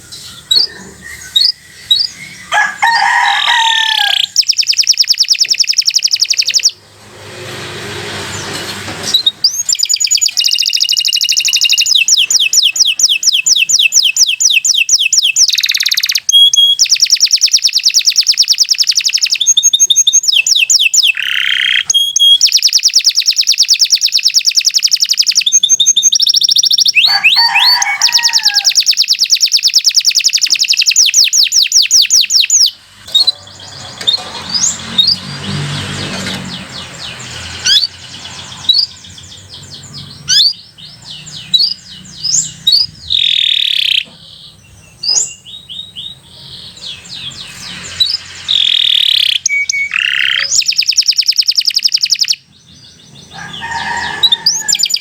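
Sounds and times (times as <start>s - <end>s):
canary singing: 0.0s - 55.0s.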